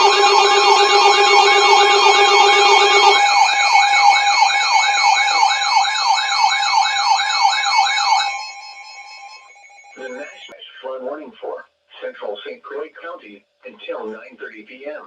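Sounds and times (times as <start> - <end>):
steady electronic tones: 0.0 - 10.5
warbling emergency siren: 0.0 - 10.5.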